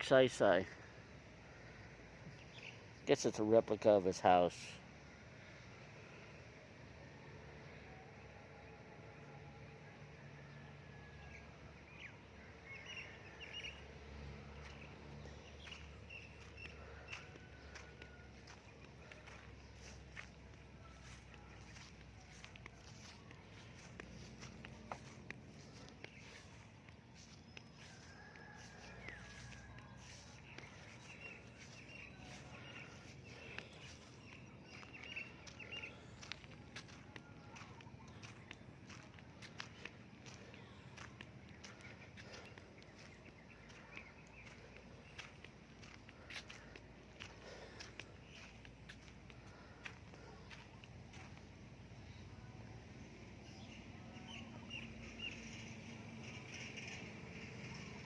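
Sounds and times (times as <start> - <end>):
small birds chirping: 0.0 - 4.5, 11.3 - 58.0
light footsteps: 12.5 - 52.0.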